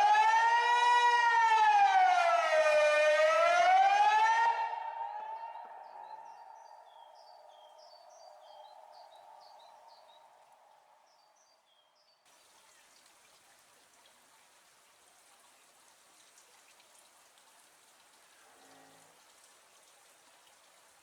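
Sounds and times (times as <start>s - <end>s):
siren faint steady note: 0.0s - 10.6s
light rain hiss: 7.0s - 21.0s.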